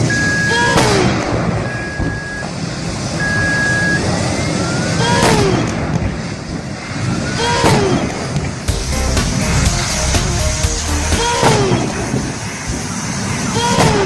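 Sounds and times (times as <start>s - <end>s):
sharp hits with falling tone: 8.7s - 12.3s.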